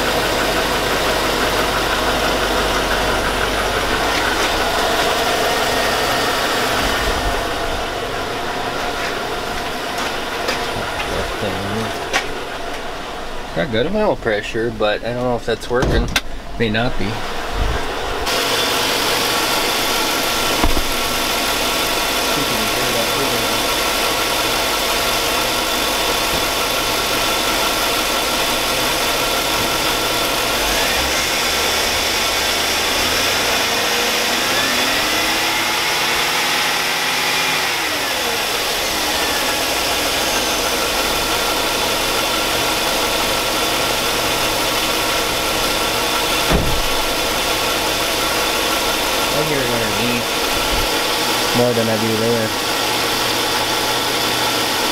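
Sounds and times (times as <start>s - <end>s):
engine idling with knocking: 0.0s - 54.9s.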